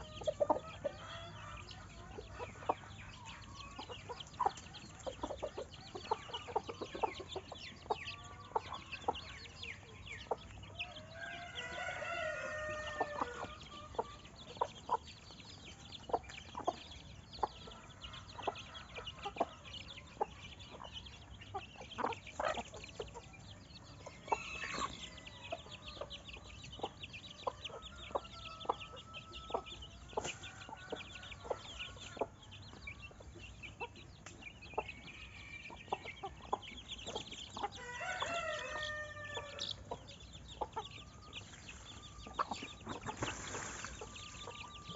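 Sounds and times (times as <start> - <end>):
chickens clucking: 0.0 - 44.9
rooster crowing: 10.9 - 13.9, 24.2 - 25.6, 37.8 - 39.8.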